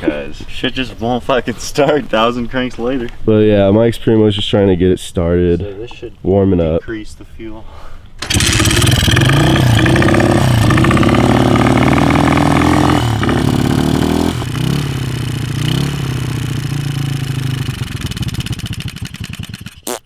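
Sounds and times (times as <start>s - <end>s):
pit bike engine revving: 8.2s - 20.0s.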